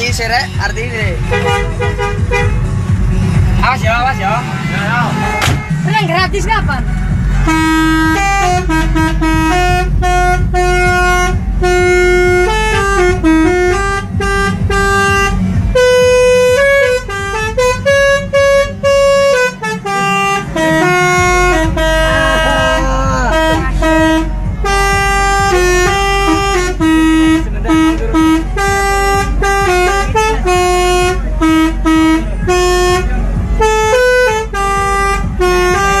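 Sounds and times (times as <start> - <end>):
low engine rumble: 0.0 - 36.0
musical air horn tune: 1.1 - 3.2, 7.3 - 36.0.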